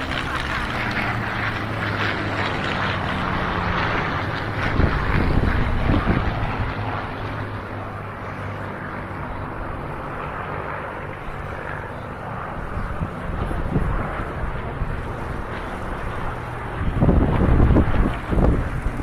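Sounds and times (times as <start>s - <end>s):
wind on microphone: 0.0s - 8.2s, 12.4s - 19.0s
propeller aircraft droning: 0.0s - 19.0s.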